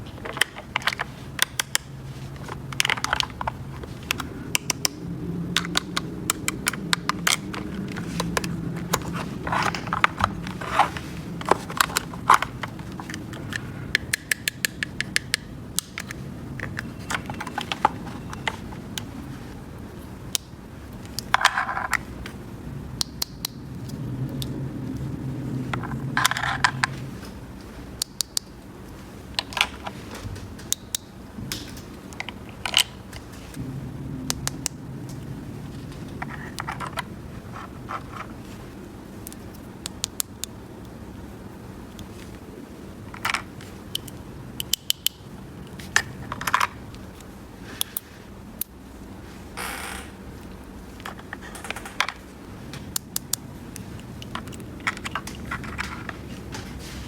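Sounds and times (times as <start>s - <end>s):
plastic toy pieces clicking: 2.7s - 5.0s, 5.6s - 18.6s
plastic pieces scraping: 5.6s - 14.1s.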